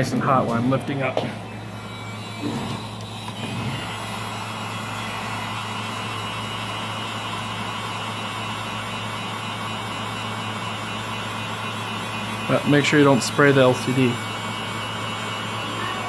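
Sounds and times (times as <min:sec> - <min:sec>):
heat gun blowing: 0:01.7 - 0:16.0.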